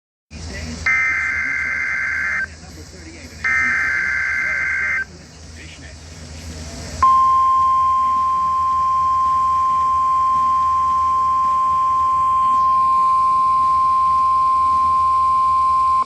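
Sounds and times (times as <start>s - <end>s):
faint radio hiss: 0.3s - 16.0s
steady loud alarm tone: 0.9s - 2.5s, 3.4s - 5.1s, 7.0s - 16.0s.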